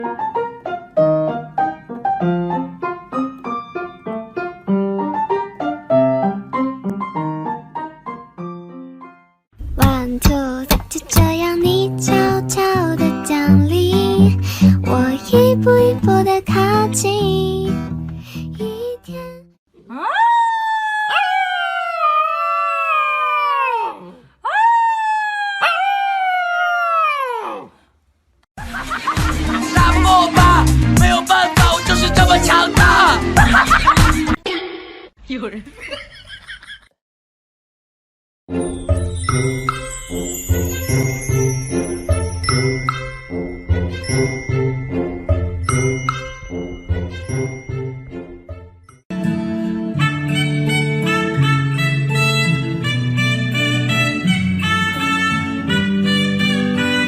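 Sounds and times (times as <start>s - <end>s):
dog howling: 19.8s - 27.7s.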